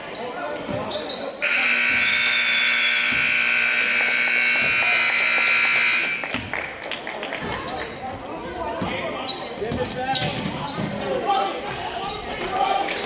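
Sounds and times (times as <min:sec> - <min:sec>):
scoreboard buzzer: 0:01.4 - 0:06.3.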